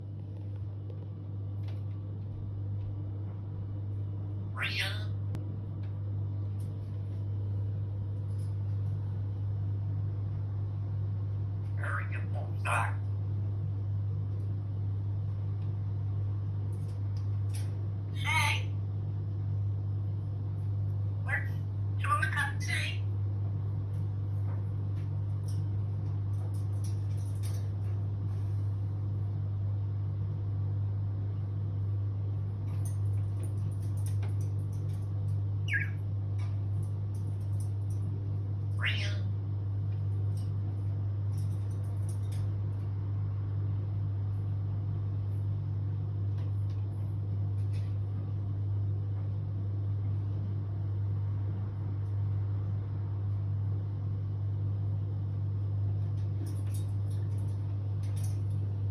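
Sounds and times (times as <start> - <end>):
steady low hum: 0.0 - 58.9
parrot calls: 4.5 - 5.2, 11.6 - 13.1, 18.1 - 18.8, 21.2 - 23.2, 35.6 - 36.1, 38.7 - 39.3.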